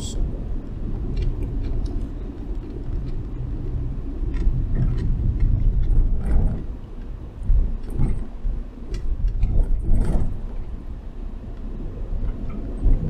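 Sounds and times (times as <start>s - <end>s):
road rumble inside car: 0.0s - 13.0s.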